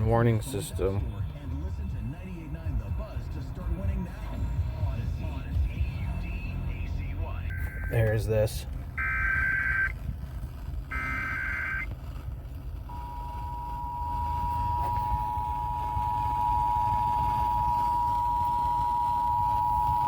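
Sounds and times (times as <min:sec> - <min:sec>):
low rumble: 0:00.0 - 0:20.0
two-tone attention signal: 0:07.5 - 0:08.3, 0:09.0 - 0:09.9, 0:10.9 - 0:11.9, 0:12.9 - 0:20.0
data burst: 0:07.5 - 0:10.0, 0:10.8 - 0:11.9
buzzing electronic screech: 0:09.0 - 0:10.0, 0:10.8 - 0:12.0.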